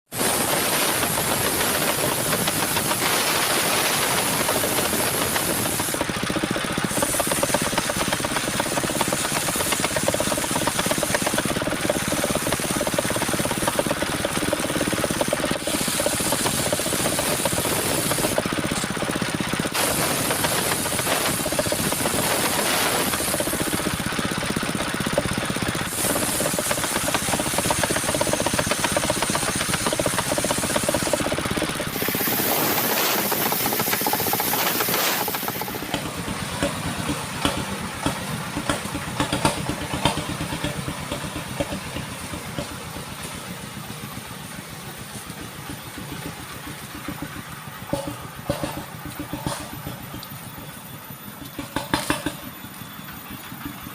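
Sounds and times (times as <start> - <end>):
sawmill engine running: 0.0 - 53.9
high hiss: 0.1 - 6.1, 19.8 - 24.0, 25.9 - 31.3, 31.9 - 38.3.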